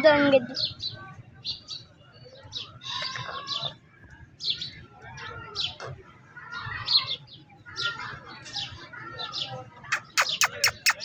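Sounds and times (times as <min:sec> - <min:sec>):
small birds chirping: 0:00.0 - 0:11.0
faint murmur: 0:02.4 - 0:11.0.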